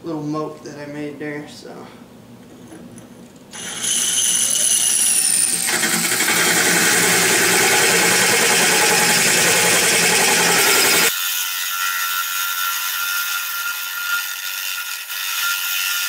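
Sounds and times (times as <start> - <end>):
power drill whine: 3.5 - 11.2
drill bit grinding glass: 3.5 - 16.0.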